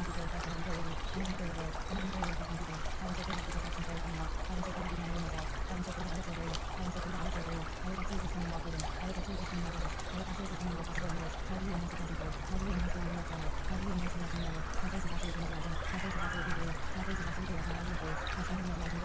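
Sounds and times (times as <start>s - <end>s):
running water: 0.0s - 19.0s.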